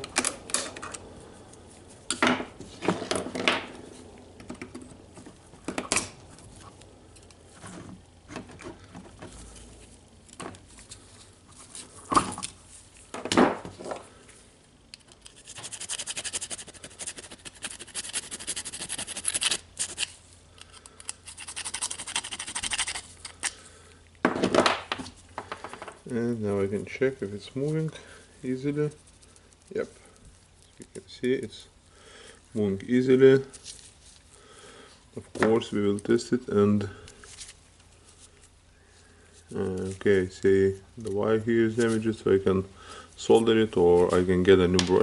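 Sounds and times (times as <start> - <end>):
hand file scraping: 15.3 - 20.1, 21.2 - 23.1.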